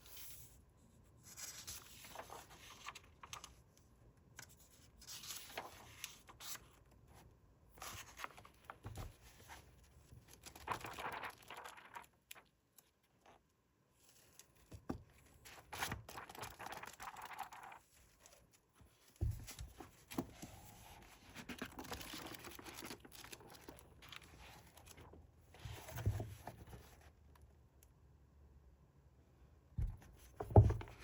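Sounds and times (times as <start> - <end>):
paper pages rustling: 1.3 - 3.7, 4.4 - 6.7, 7.8 - 12.9, 14.0 - 27.1.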